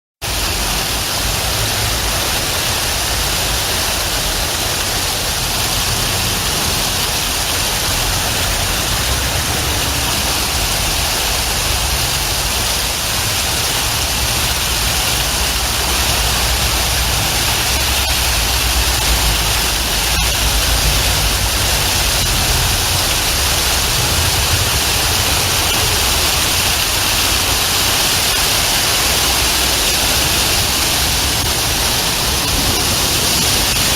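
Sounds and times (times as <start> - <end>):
steady rain hiss: 0.2 - 33.9.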